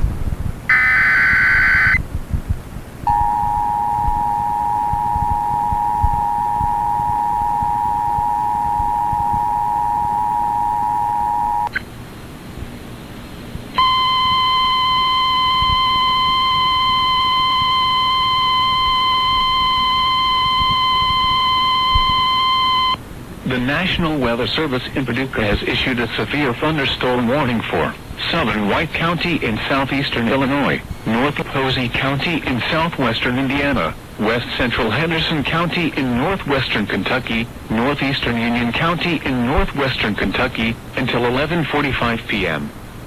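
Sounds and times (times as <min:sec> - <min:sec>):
steady alert tone: 0:03.1 - 0:11.7
two-note attention signal: 0:03.1 - 0:11.7.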